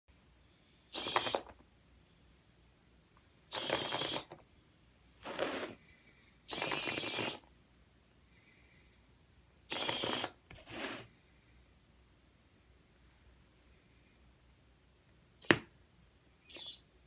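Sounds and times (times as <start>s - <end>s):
small motors whirring: 1.0s - 1.5s, 3.6s - 4.3s, 6.5s - 7.4s, 16.5s - 16.8s.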